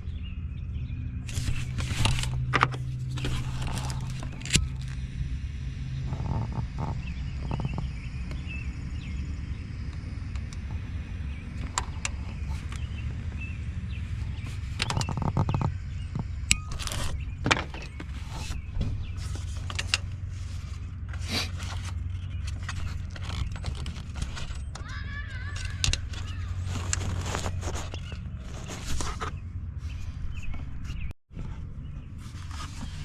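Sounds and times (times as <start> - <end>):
steady low hum: 0.0 - 33.0
scrapes: 1.2 - 5.0, 11.6 - 33.0
clicks and knocks of tools: 25.6 - 29.3.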